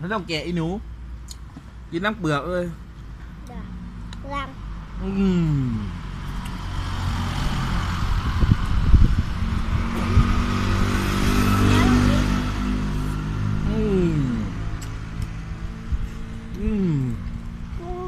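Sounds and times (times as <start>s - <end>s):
vehicle engine droning: 2.4s - 18.0s.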